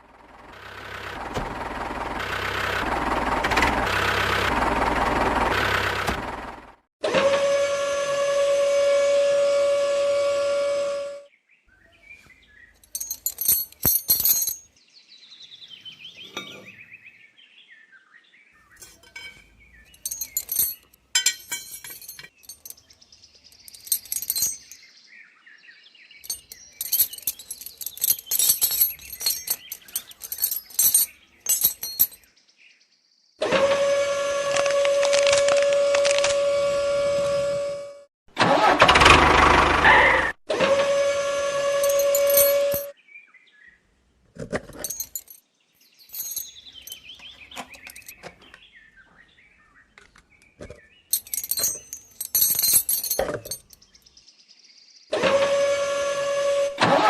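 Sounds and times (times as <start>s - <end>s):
small parts clicking and clinking: 12.8s - 14.6s, 18.8s - 22.9s, 23.5s - 24.8s, 26.3s - 32.2s, 41.7s - 42.9s, 44.4s - 48.2s, 50.6s - 53.8s.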